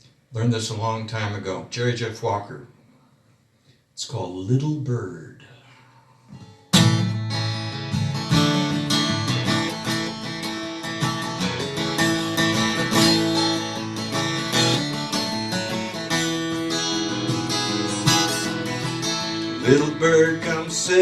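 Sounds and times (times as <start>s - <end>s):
acoustic guitar strumming chords: 6.4s - 21.0s.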